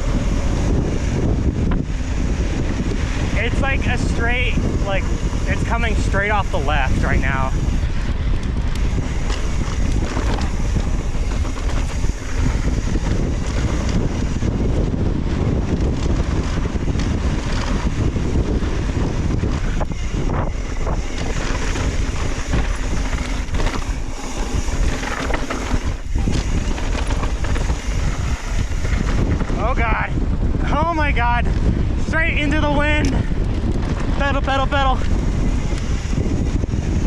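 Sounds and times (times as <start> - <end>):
wind buffeting microphone: 0.0 - 37.0
bike knocking over trail: 8.5 - 29.6.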